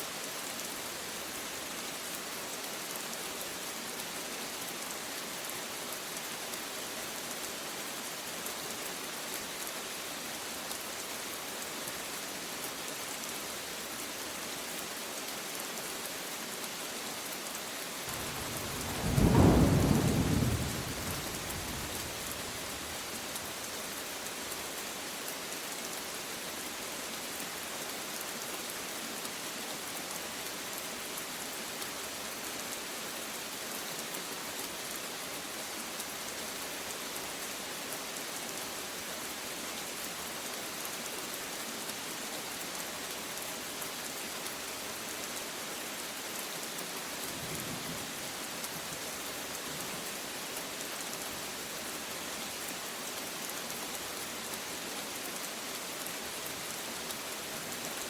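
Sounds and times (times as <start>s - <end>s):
steady rain falling: 0.0s - 58.0s
thunder rumble: 18.1s - 22.6s.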